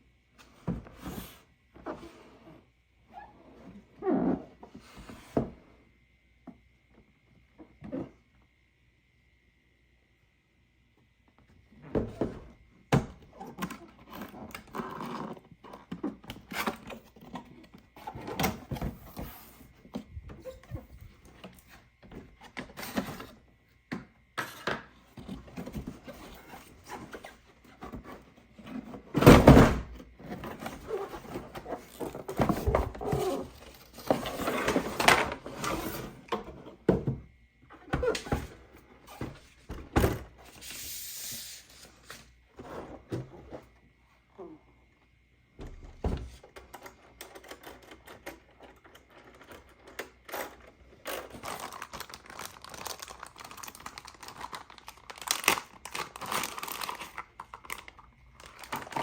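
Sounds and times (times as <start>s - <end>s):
box and packaging knocks and rustling: 27.8s - 37.3s, 39.2s - 40.4s, 45.6s - 46.4s.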